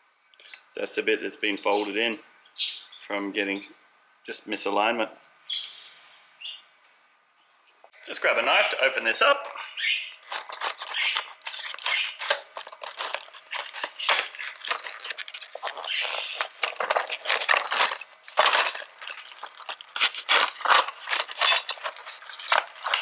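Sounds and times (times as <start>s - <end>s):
knife cutting packet: 10.2s - 23.0s
packaging crinkling and tearing: 10.2s - 23.0s.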